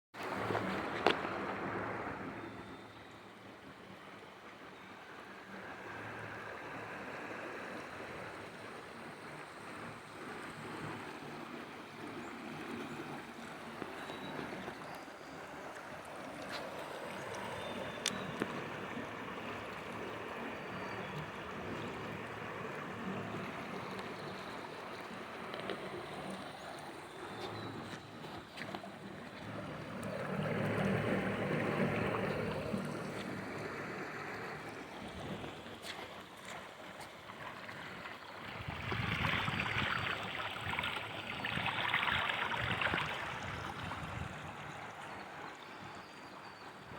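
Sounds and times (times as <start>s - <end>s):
floodwater rushing: 11.5s - 45.4s.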